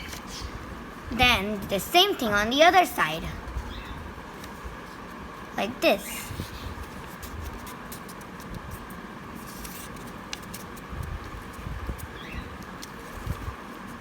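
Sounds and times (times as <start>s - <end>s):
low background hum: 0.0s - 14.0s
paper crinkling and creasing: 4.3s - 5.3s, 6.7s - 14.0s
paper rustle: 6.5s - 14.0s.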